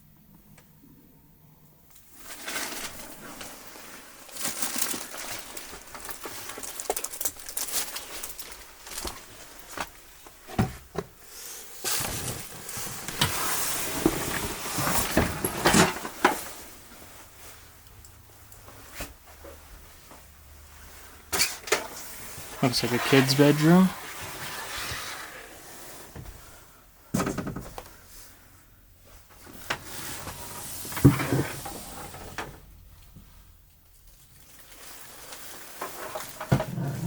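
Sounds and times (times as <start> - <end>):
rustling and scuffing: 2.2 - 26.6.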